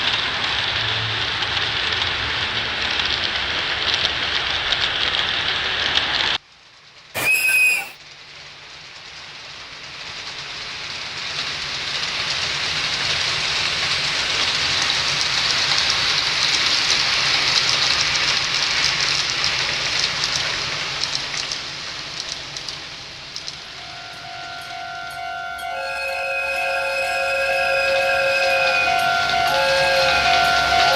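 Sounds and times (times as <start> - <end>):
train rolling past: 0.0 - 6.4, 7.1 - 30.9
train horn chord: 23.6 - 30.9.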